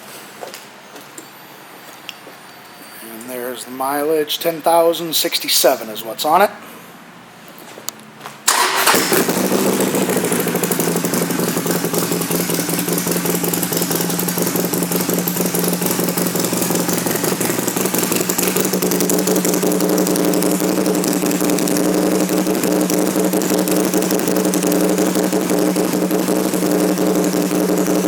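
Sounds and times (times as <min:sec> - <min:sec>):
motorcycle engine idling: 0:08.5 - 0:28.0.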